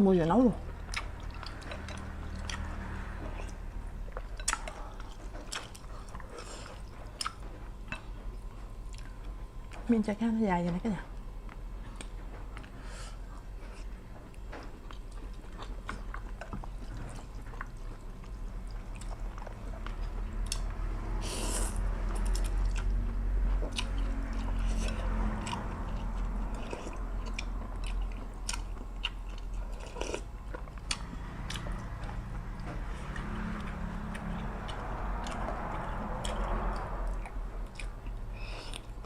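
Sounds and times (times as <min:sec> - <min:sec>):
low hum: 0:00.0 - 0:39.0
person chewing food: 0:00.6 - 0:09.8, 0:11.2 - 0:39.0.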